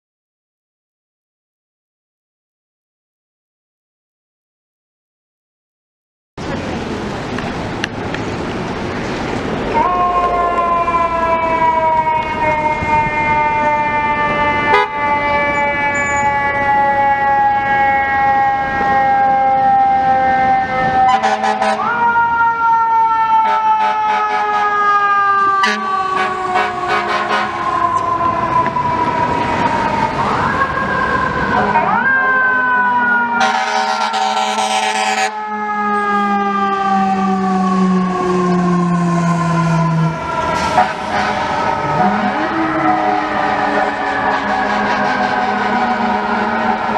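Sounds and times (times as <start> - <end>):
street noise: 6.4 - 46.9
fire truck siren wailing: 6.7 - 46.9
air horn blast: 14.7 - 15.0, 21.1 - 21.9, 23.4 - 24.7, 25.6 - 27.7, 33.4 - 35.4, 40.6 - 46.9.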